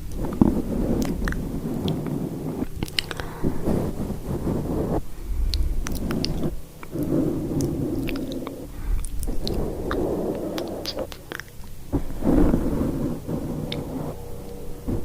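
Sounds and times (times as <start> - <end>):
small sharp ticks: 0.0 - 4.0, 5.4 - 11.8, 12.4 - 14.6
rubbing on microphone: 0.0 - 15.0.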